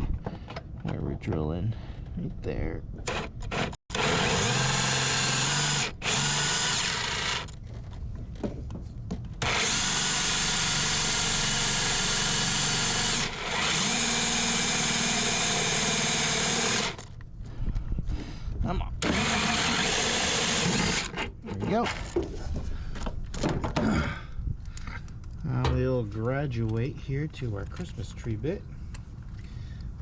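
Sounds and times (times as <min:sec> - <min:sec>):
power drill boring: 0:03.1 - 0:07.6, 0:09.4 - 0:17.1, 0:19.0 - 0:21.2.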